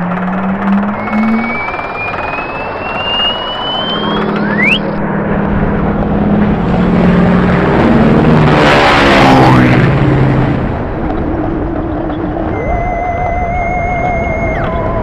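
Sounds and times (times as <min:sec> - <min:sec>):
long rising whistle: 0:00.0 - 0:05.0, 0:12.5 - 0:15.0
low held tones: 0:00.0 - 0:05.2, 0:11.8 - 0:15.0
fast falling run of pitches: 0:00.0 - 0:15.0
roller coaster ride noise: 0:00.0 - 0:15.0
slide whistle sweep: 0:00.4 - 0:05.0, 0:12.5 - 0:15.0.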